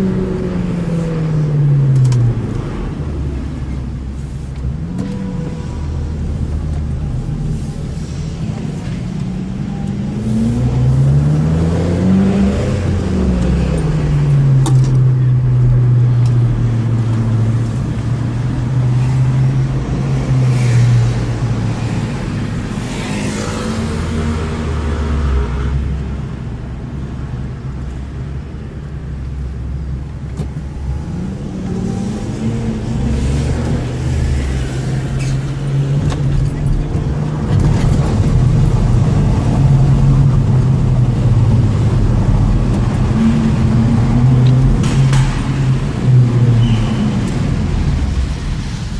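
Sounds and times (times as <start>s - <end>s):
car engine accelerating: 4.7s - 26.0s.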